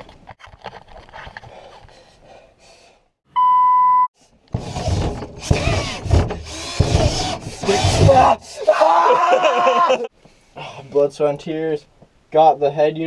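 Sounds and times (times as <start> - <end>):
censor bleep: 3.3 - 4.1
jigsaw cutting: 4.6 - 8.4.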